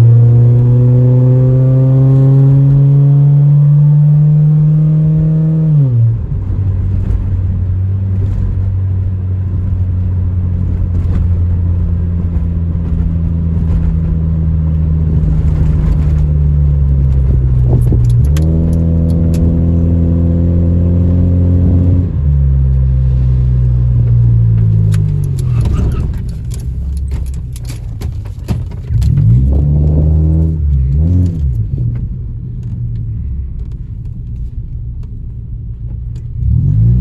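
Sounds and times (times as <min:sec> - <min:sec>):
car engine running with misfires: 0:06.1 - 0:20.0, 0:22.5 - 0:37.0.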